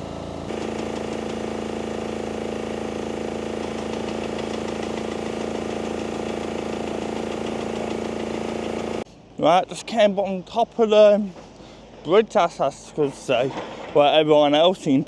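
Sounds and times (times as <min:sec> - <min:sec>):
heavy machinery engine humming: 0:00.0 - 0:09.1.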